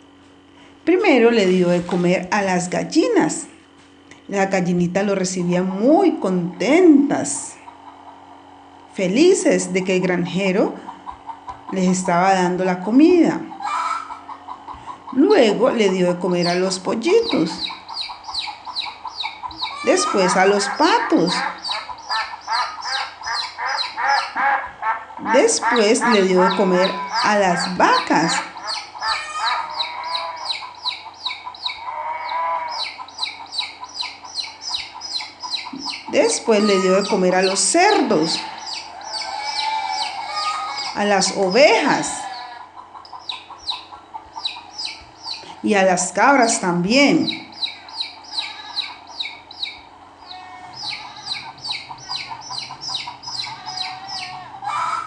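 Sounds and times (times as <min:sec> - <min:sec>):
hens clucking: 0:00.0 - 0:02.7, 0:05.1 - 0:55.0
chicks peeping: 0:07.6 - 0:08.7, 0:10.3 - 0:55.0
bird chirping: 0:16.3 - 0:24.4, 0:25.8 - 0:36.2, 0:37.0 - 0:41.7, 0:43.0 - 0:45.6, 0:46.5 - 0:54.4.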